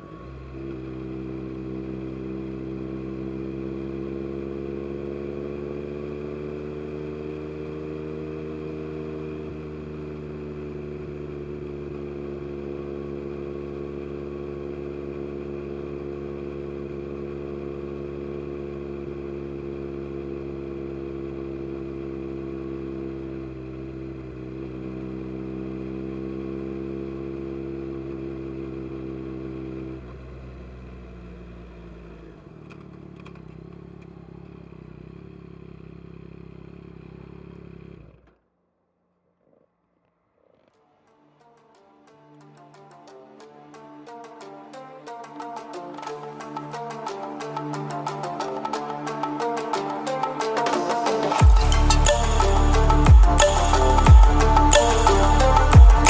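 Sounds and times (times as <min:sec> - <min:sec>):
motorcycle engine revving high: 0:00.0 - 0:30.4, 0:51.4 - 0:56.0.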